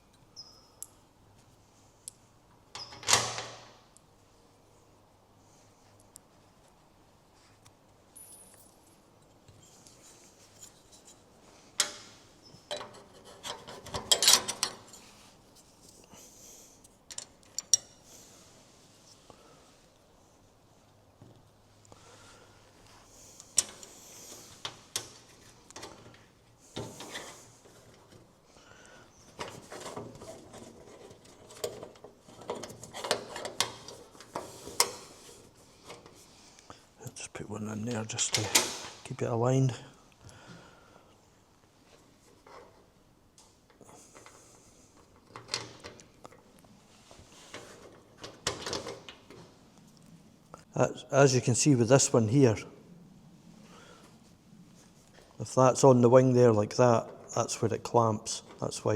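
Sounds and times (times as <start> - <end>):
metallic clinks of bolts: 8.2 - 9.2.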